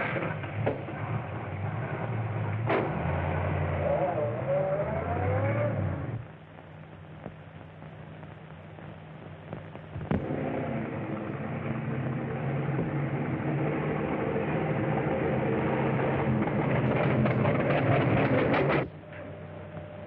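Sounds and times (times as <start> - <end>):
car engine drone: 0.0 - 6.7, 9.8 - 20.0
film soundtrack hiss: 0.0 - 20.0.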